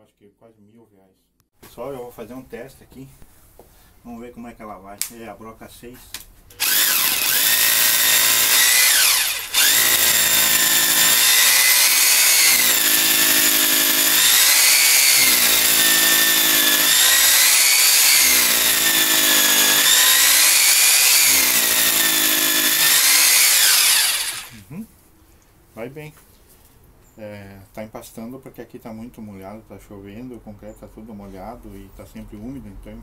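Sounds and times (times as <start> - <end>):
hammer drill drilling into concrete: 6.6 - 24.6.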